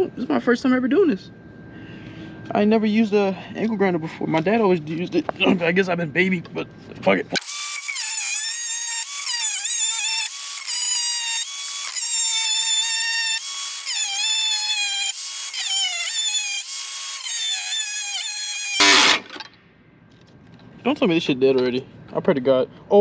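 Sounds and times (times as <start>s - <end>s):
angle grinder cutting steel: 7.4s - 19.2s.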